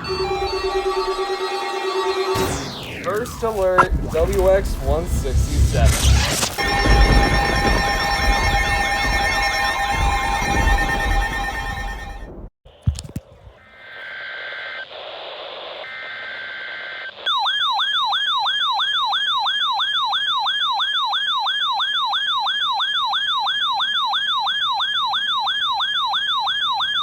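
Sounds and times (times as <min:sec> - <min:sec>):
warbling siren alarm: 0:00.0 - 0:04.6, 0:05.9 - 0:12.5, 0:15.7 - 0:27.0
radio hiss: 0:02.7 - 0:06.2, 0:13.5 - 0:17.2.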